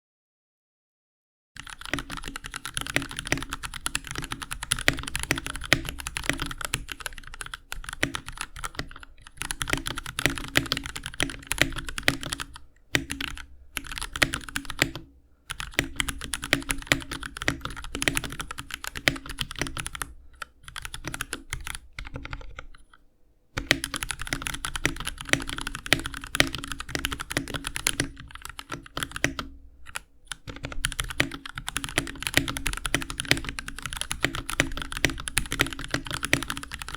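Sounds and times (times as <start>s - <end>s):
typing on mechanical keyboard: 1.6s - 23.0s, 23.6s - 36.9s.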